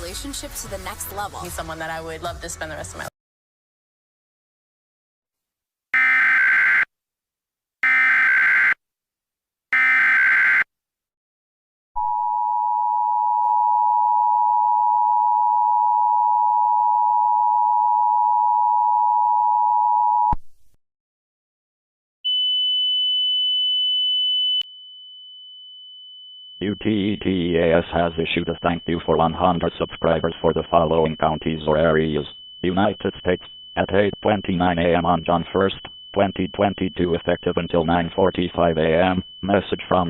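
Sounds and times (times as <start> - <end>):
higher steady tone: 24.6 - 40.0
two-tone attention signal: 26.6 - 40.0.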